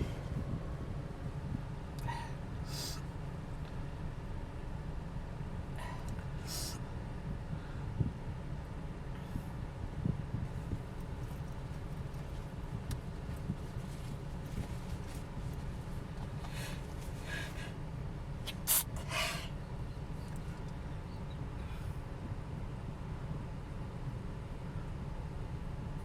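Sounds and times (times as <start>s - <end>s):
car rumbling on the move: 0.0s - 3.6s, 10.0s - 21.8s
person sneezing: 18.5s - 19.5s.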